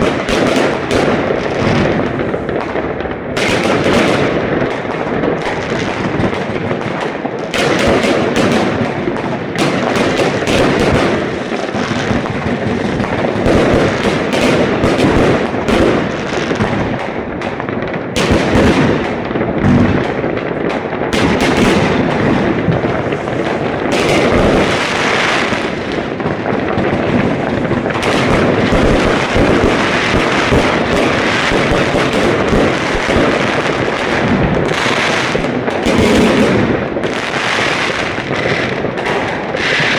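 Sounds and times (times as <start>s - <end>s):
fireworks bangs and crackling: 0.0s - 39.9s.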